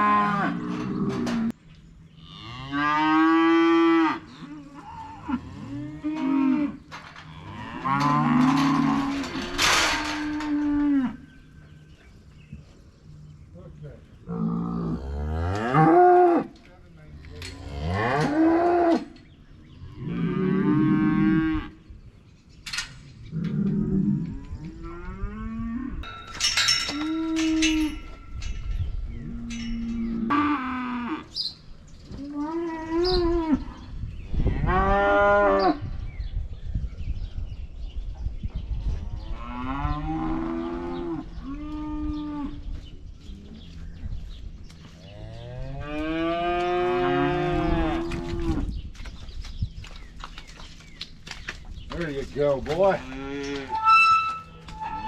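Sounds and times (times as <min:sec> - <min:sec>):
cattle mooing: 0:02.2 - 0:11.2.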